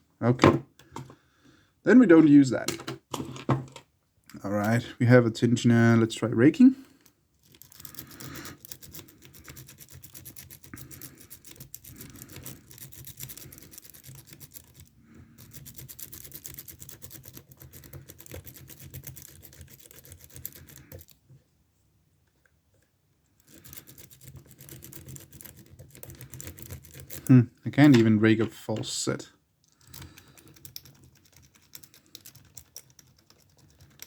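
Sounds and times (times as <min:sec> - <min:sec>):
lock pick raking scratchy clicks: 0:07.0 - 0:21.2, 0:23.4 - 0:27.3, 0:29.6 - 0:34.0.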